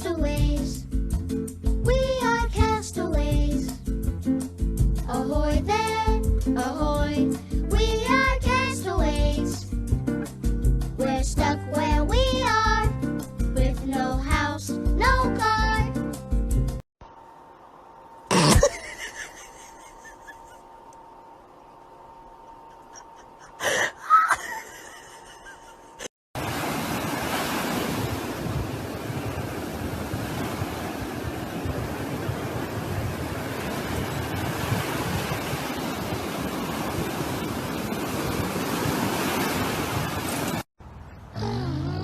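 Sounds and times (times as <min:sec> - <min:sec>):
steady rushing noise: 0:28.0 - 0:40.6.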